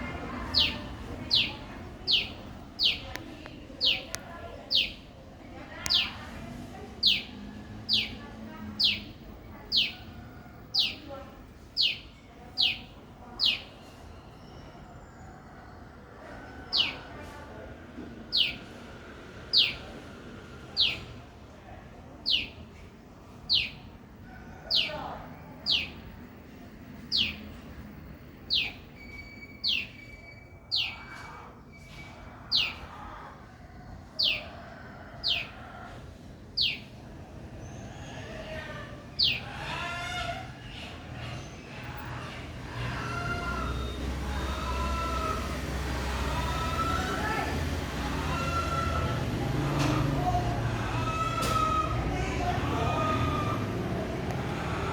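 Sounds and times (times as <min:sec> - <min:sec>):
faint bird chirps: 0:11.8 - 0:17.0, 0:28.5 - 0:32.9.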